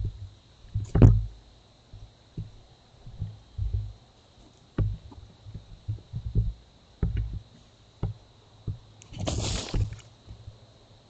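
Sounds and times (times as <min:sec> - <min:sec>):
faint low thumps: 0:00.0 - 0:04.0, 0:04.8 - 0:08.9.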